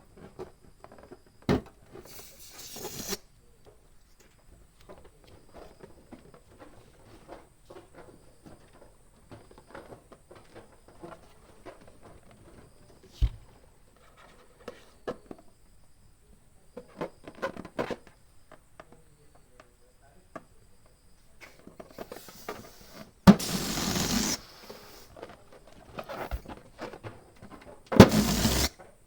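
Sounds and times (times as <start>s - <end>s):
rubber and plastic rustling: 21.6s - 28.8s.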